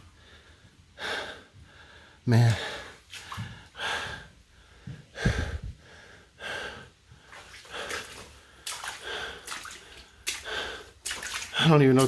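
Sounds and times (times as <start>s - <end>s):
broom pushing water: 7.2s - 12.0s.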